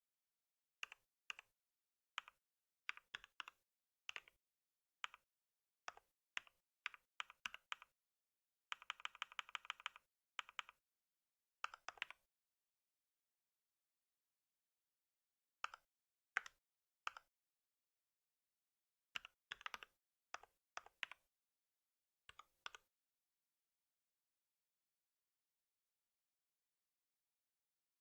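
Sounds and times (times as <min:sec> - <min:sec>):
computer keyboard typing: 0:08.7 - 0:10.8, 0:19.2 - 0:19.9.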